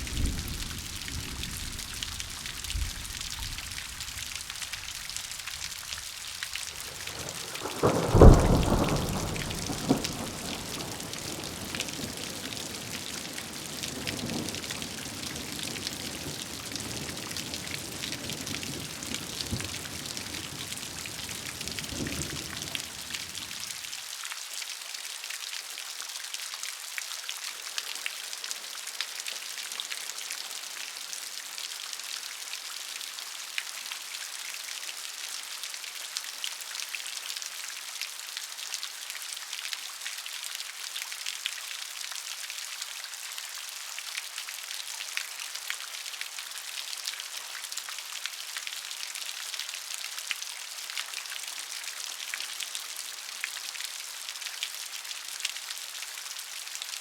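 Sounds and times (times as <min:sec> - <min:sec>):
thunder clap and rumble: 0:00.0 - 0:04.2, 0:06.9 - 0:12.9
steady rain hissing: 0:00.0 - 0:26.1.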